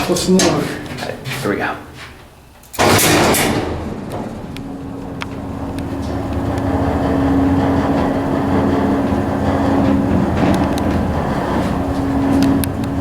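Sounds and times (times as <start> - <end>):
hydraulic pump motor humming: 0.0 - 13.0.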